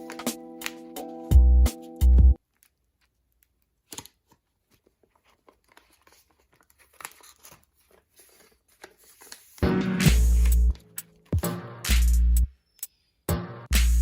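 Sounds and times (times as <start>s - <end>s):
paper rustling and crinkling: 0.0s - 1.2s, 2.4s - 11.3s
background music: 0.0s - 2.4s, 9.6s - 14.0s.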